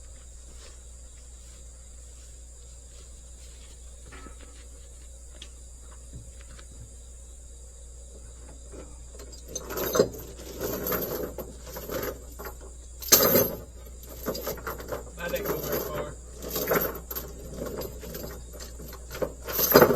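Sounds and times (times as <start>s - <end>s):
insects chirring: 0.0s - 19.9s
clunks and rattles: 8.3s - 19.9s.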